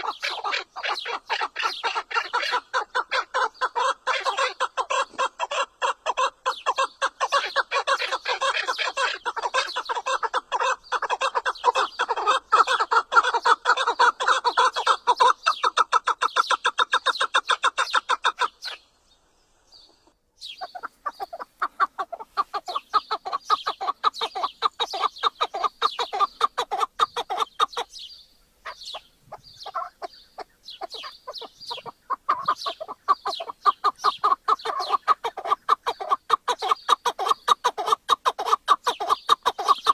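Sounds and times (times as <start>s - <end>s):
partridge calling: 0.0s - 19.0s, 19.8s - 39.9s.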